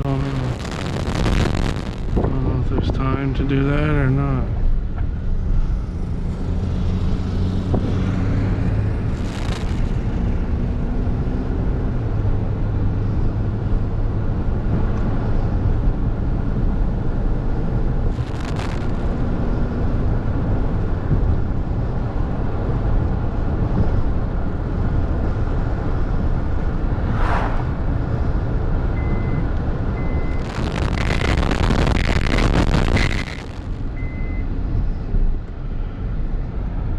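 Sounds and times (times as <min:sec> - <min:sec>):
car engine and road rumble: 0:00.0 - 0:36.9
vehicle passing: 0:26.7 - 0:28.7
high beep: 0:29.0 - 0:29.4, 0:30.0 - 0:31.4, 0:34.0 - 0:34.4.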